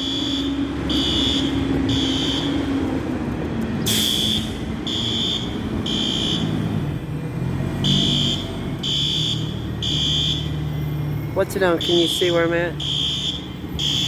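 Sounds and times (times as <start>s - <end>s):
fire alarm beeping: 0.0s - 2.6s, 4.1s - 6.5s, 7.9s - 10.6s, 11.7s - 14.0s.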